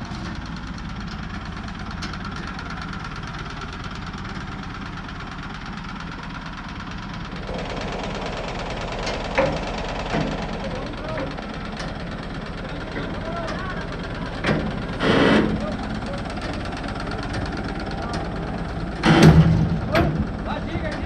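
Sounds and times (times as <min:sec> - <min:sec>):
machinery knocking steadily: 0:00.0 - 0:21.0
loud rasping sound: 0:14.8 - 0:16.0.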